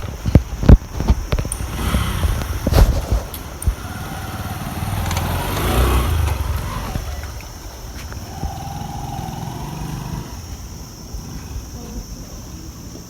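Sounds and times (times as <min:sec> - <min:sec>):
motorcycle engine running: 0:00.0 - 0:11.6.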